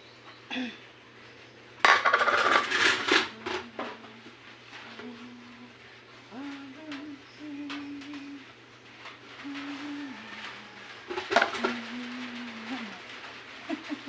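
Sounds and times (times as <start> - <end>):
dishes clattering: 1.8 - 4.0, 10.8 - 14.0
person humming: 3.0 - 8.6, 9.4 - 14.0.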